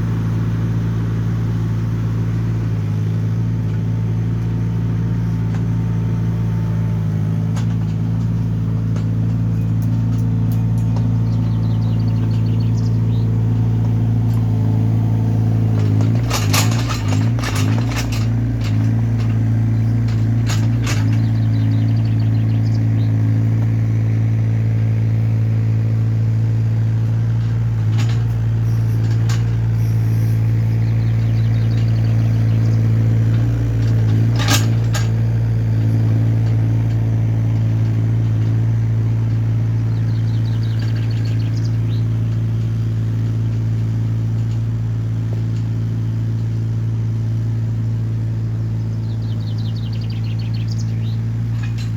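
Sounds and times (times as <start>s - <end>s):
excavator diesel engine running: 0.0s - 51.9s
sharp metallic clanks: 15.7s - 23.2s, 27.1s - 44.7s, 49.0s - 51.9s.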